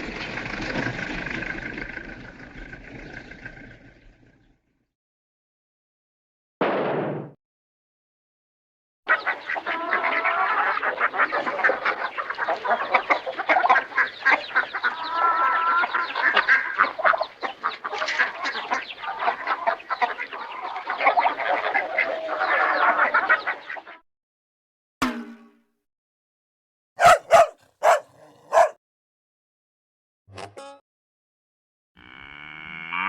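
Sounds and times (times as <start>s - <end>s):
birds calling: 9.1s - 23.8s, 27.0s - 28.8s
chickens clucking: 9.1s - 23.8s, 27.0s - 28.7s
geese honking: 9.1s - 23.8s, 27.0s - 28.7s
ducks quacking: 9.1s - 24.0s, 27.0s - 28.7s.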